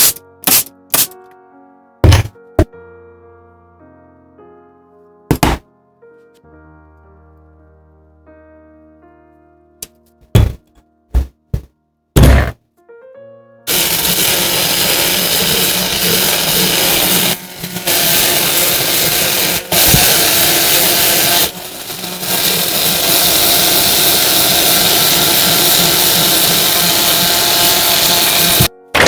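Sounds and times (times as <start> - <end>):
rotary tool grinding metal: 13.7 - 28.7.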